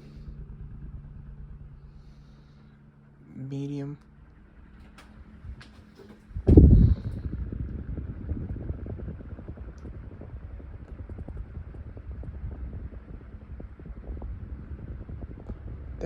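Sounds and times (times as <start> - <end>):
ceiling fan running: 0.0 - 16.0
short thump: 4.9 - 7.2.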